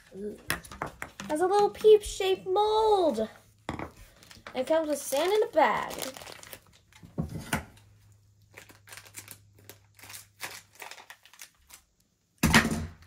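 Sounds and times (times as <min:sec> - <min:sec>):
plastic packaging crinkling: 0:04.0 - 0:07.2, 0:08.3 - 0:12.1
loud plastic crackle: 0:04.1 - 0:07.2, 0:08.4 - 0:12.0.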